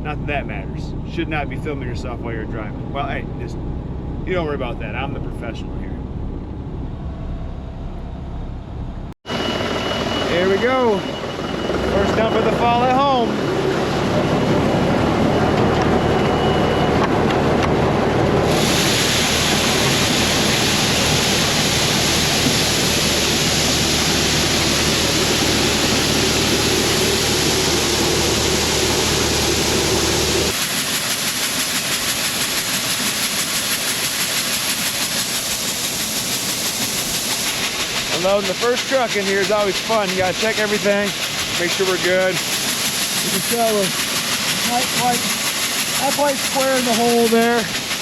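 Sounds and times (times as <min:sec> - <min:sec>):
corn pouring with rushing hiss: 0:18.4 - 0:42.6, 0:43.2 - 0:44.0, 0:45.8 - 0:48.0.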